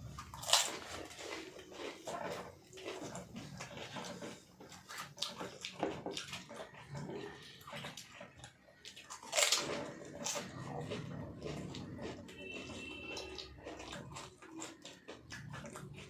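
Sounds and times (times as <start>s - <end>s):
people chewing and slurping: 0.0s - 16.0s.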